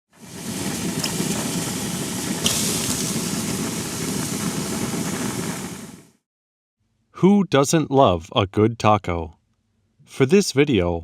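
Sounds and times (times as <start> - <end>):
meat sizzling on a griddle: 0.2 - 6.0.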